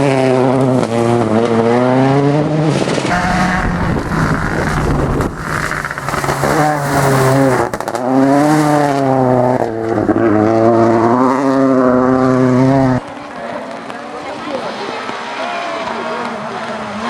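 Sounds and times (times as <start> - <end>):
rally car engine revving: 0.0 - 17.0
engine crackle at gear shift: 3.0 - 13.8.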